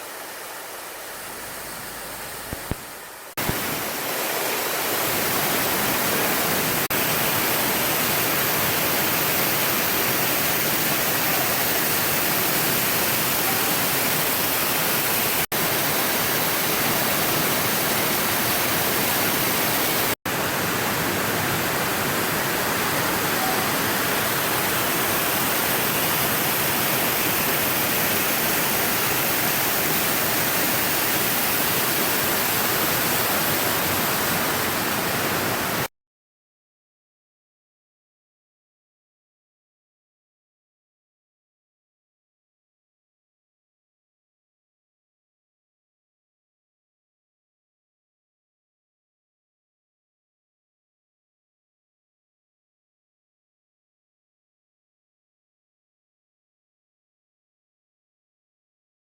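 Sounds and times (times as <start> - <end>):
waterfall rushing: 0.0 - 35.9.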